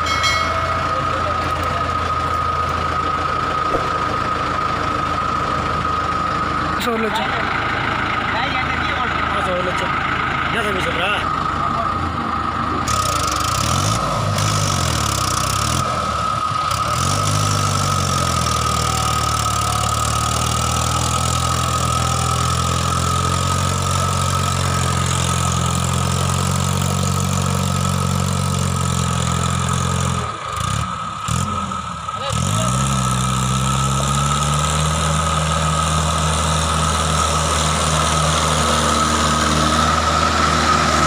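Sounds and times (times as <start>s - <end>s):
steady high whine: 0.0s - 7.6s
tractor diesel engine running: 0.0s - 41.0s.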